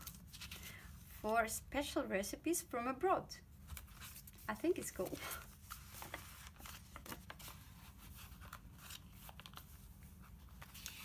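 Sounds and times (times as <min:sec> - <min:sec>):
paper pages rustling: 0:00.0 - 0:01.3, 0:03.6 - 0:11.0.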